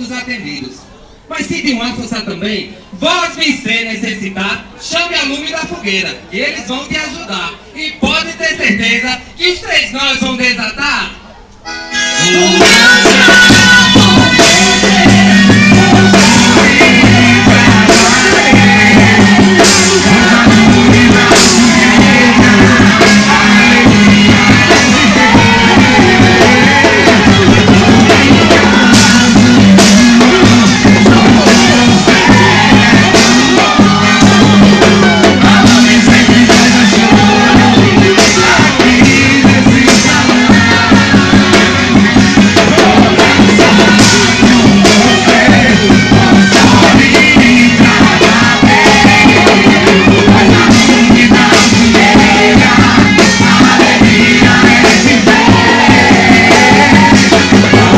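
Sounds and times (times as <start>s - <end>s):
loud music with drums: 12.0s - 57.9s.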